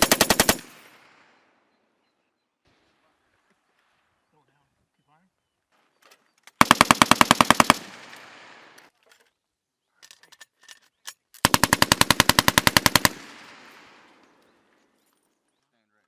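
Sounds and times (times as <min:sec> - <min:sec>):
machine gun bursts: 0:00.0 - 0:00.8, 0:06.6 - 0:08.1, 0:11.4 - 0:13.6
faint distant gunshots: 0:11.5 - 0:14.8.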